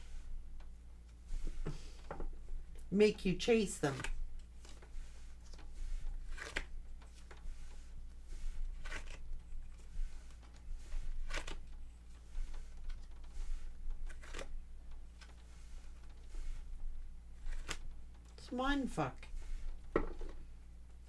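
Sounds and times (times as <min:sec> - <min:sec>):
low electrical hum: 0:00.0 - 0:21.0
cards rustling and flicking: 0:03.3 - 0:16.7, 0:17.4 - 0:20.5.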